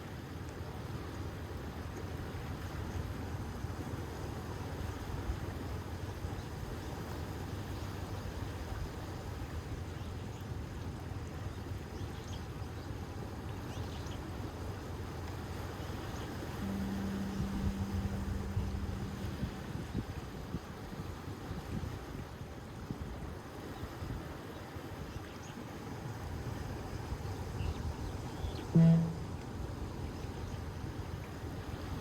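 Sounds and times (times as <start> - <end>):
waves rumbling: 16.6 - 20.0
low steady tone: 16.6 - 21.1, 28.8 - 29.5.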